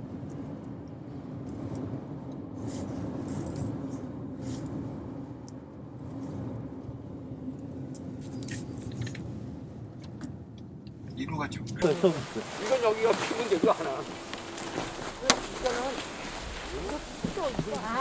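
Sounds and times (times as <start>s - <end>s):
faint rustles: 11.8s - 18.0s.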